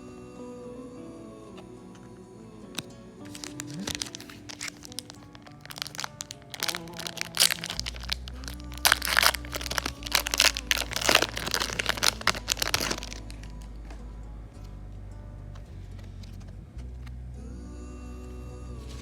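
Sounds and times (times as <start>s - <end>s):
background music with held notes: 0.0s - 19.0s
wrapper crinkling and tearing: 3.3s - 13.6s.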